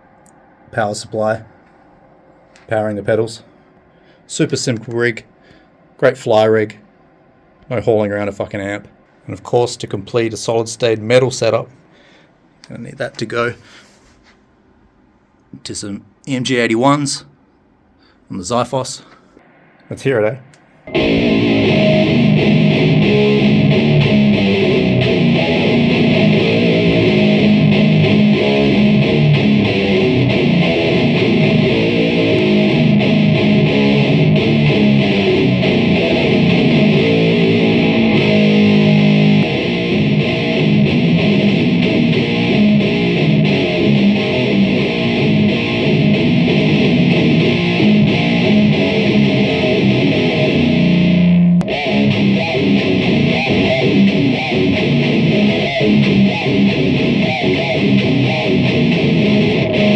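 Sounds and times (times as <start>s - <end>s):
distorted electric guitar riffing: 20.9s - 59.9s.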